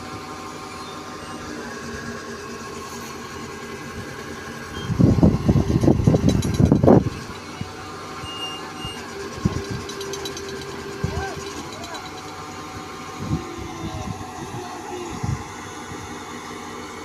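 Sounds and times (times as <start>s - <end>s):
heavy machinery engine running: 0.0s - 17.0s
loud irregular rumbling burst: 3.9s - 7.3s.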